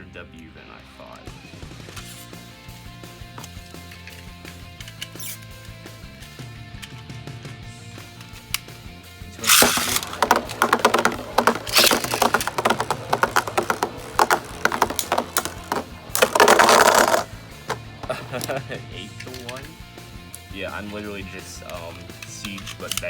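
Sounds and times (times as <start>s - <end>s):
background music: 0.0s - 23.0s
spinning tops clashing: 9.4s - 18.6s
tops launched into plastic stadium: 9.4s - 19.8s.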